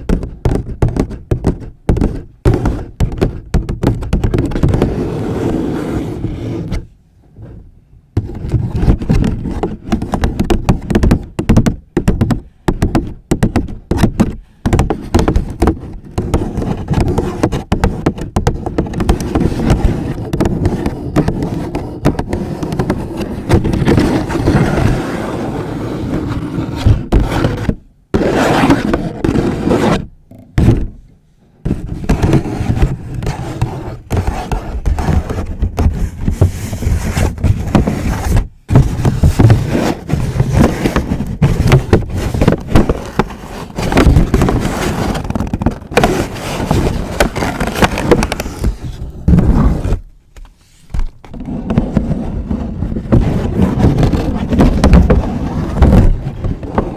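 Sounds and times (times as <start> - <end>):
tapping on paper bag: 0.0 - 4.9, 8.2 - 24.1, 37.3 - 49.5
fingernails scratching paper bag: 13.9 - 30.8, 31.6 - 50.0.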